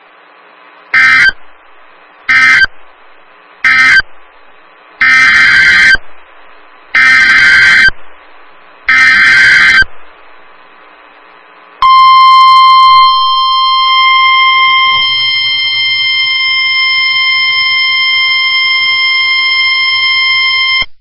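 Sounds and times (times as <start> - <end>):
high-pitched alarm tone: 11.8 - 20.7.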